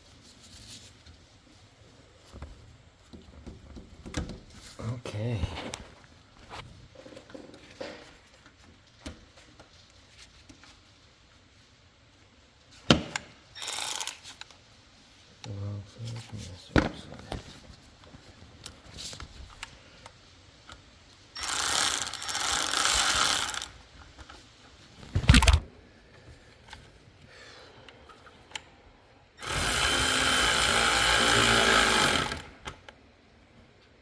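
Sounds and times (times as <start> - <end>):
handheld power tool running: 21.4 - 23.7, 29.4 - 32.8.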